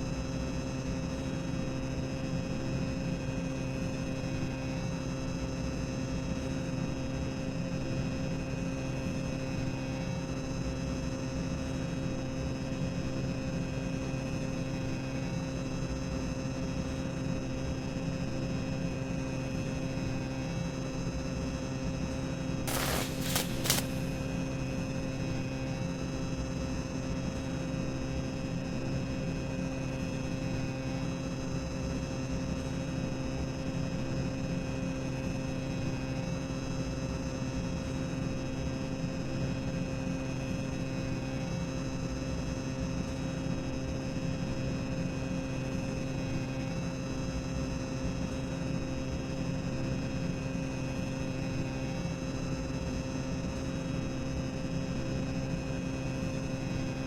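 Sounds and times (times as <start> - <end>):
even hiss: 22.7 - 24.3
machinery humming: 22.7 - 24.3.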